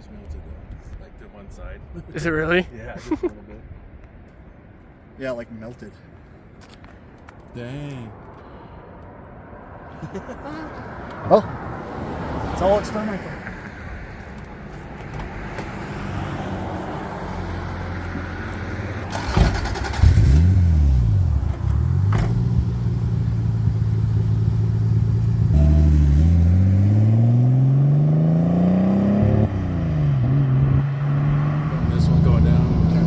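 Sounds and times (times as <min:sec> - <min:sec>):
car engine accelerating hard: 0:16.1 - 0:33.0.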